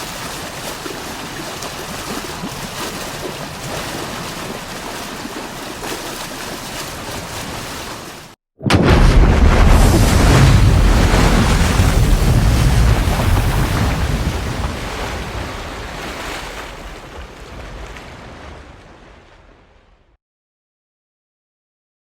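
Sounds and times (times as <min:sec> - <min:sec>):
rushing roar with deep rumble: 0:08.7 - 0:15.0.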